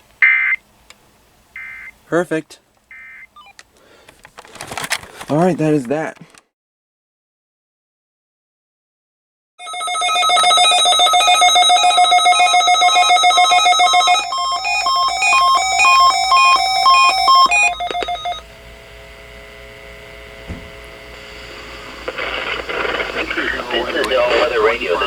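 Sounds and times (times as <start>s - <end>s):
faint steady tones and hum: 0.0s - 4.7s, 9.7s - 25.0s
electronic alarm beeping and warbling: 9.7s - 18.4s.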